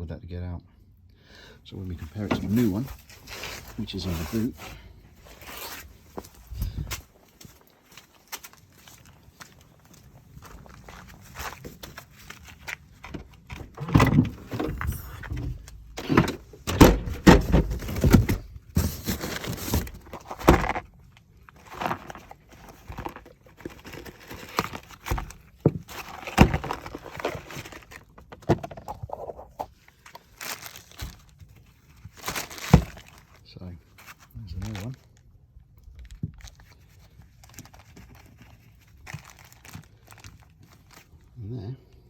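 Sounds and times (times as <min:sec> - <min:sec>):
parts clunking and rattling: 0:01.9 - 0:08.0, 0:09.0 - 0:33.3.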